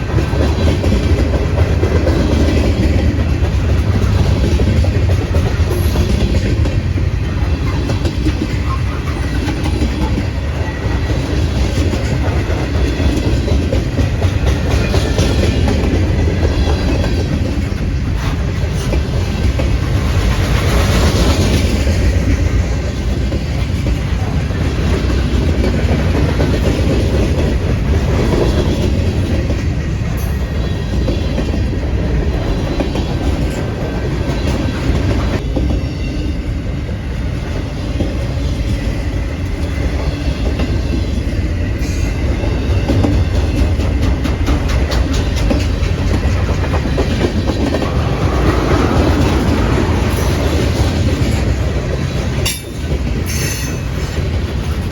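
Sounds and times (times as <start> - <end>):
wheels clickety-clack over joints: 0.0 - 35.8, 41.8 - 54.9
train wheels rumbling on rail: 0.0 - 54.9.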